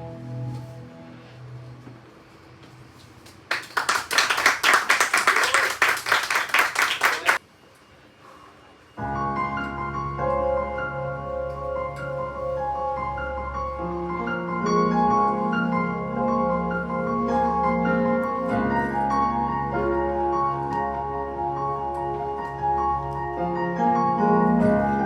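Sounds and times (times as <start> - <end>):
sustained keyboard chords: 9.0 - 25.0.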